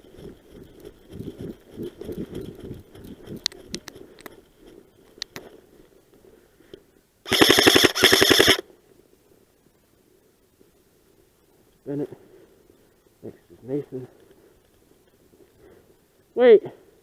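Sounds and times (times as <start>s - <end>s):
scattered clicks: 0.2s - 4.5s, 5.1s - 5.6s, 6.7s - 8.6s
airsoft gun full-auto bursts: 7.3s - 8.6s.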